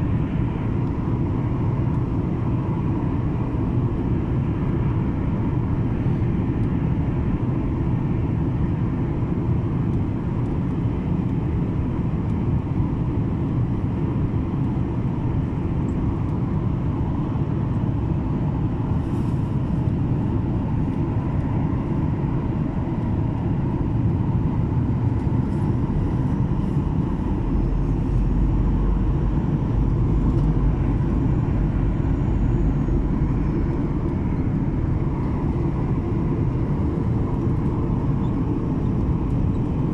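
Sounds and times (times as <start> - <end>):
airliner cabin drone: 0.0 - 39.9
deep low rumble: 23.8 - 39.9.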